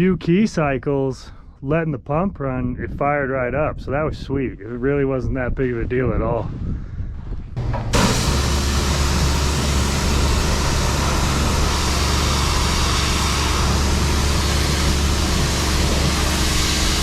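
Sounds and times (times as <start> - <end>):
heavy machinery low hum: 7.6 - 17.0
loud even hiss: 7.9 - 17.0.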